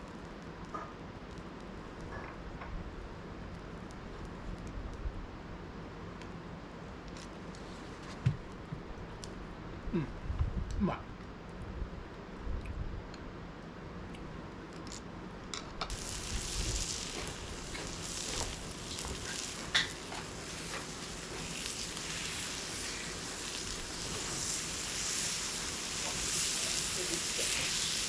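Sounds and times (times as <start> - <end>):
food sizzling: 15.9 - 28.0.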